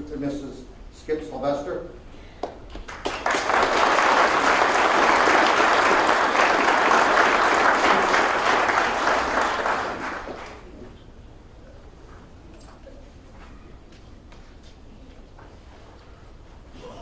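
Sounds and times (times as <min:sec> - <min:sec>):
audience applauding: 0:02.8 - 0:10.7.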